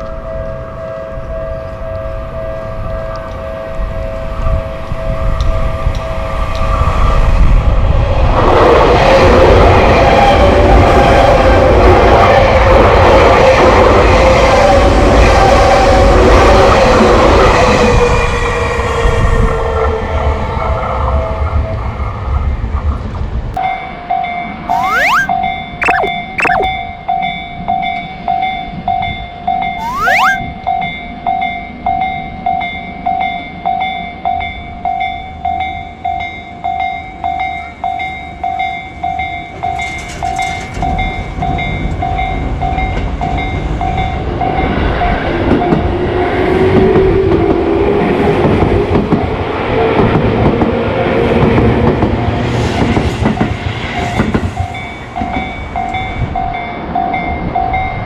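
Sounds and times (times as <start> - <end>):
train passing with whine and clatter: 31.6 - 58.0.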